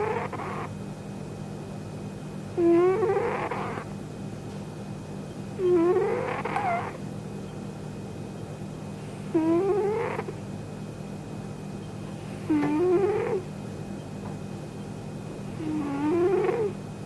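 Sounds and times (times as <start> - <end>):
kitten snoring: 0.0 - 0.8, 2.5 - 3.9, 5.6 - 7.0, 9.2 - 10.4, 12.3 - 13.5, 15.4 - 16.8.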